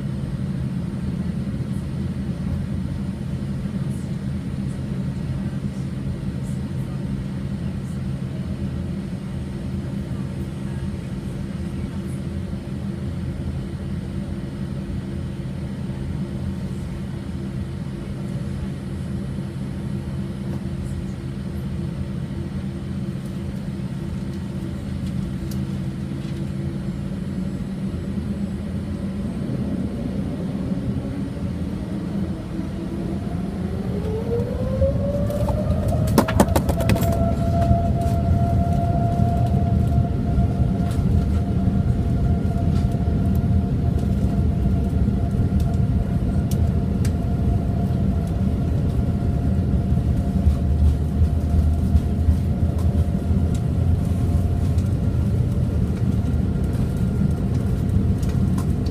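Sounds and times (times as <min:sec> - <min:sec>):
jet engines rumbling: 0:00.0 - 0:58.9
jet engine whine rising: 0:12.6 - 0:58.9.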